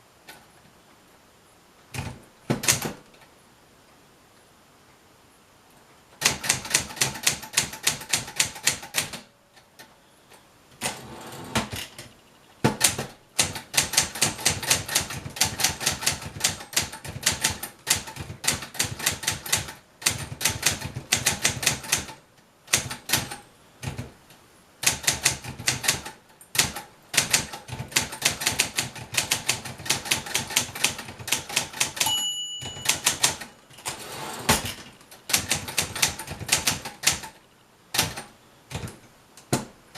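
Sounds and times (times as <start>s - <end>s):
typewriter keystroke clacks: 1.9s - 3.0s, 6.2s - 9.3s, 12.7s - 24.1s, 24.8s - 32.1s, 32.7s - 34.0s, 35.1s - 37.4s, 38.0s - 39.7s
typewriter margin bell: 31.4s - 34.0s.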